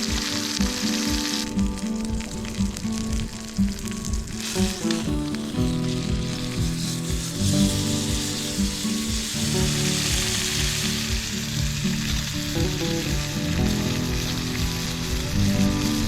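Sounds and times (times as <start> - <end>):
background music with low notes: 0.0 - 16.0
food sizzling in a pan: 0.0 - 16.0.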